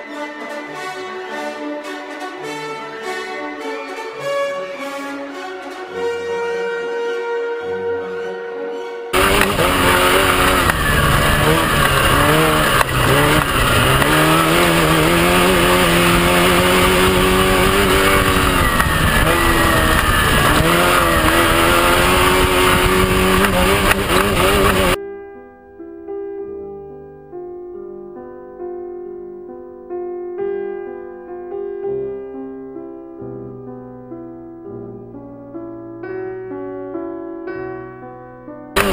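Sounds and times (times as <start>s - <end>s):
truck engine revving: 9.2s - 25.0s.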